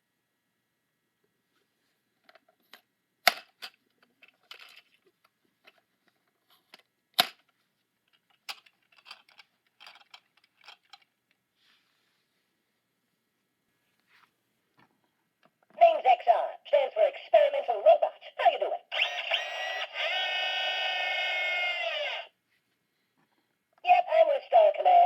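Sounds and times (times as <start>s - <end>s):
plastic toy clicks and knocks: 3.3s - 4.9s, 7.2s - 7.5s, 8.2s - 11.1s.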